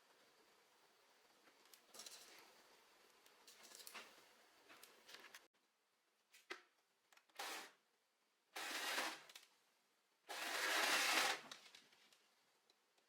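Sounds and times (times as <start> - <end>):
sewing machine stitching: 8.6 - 9.3, 10.3 - 11.4.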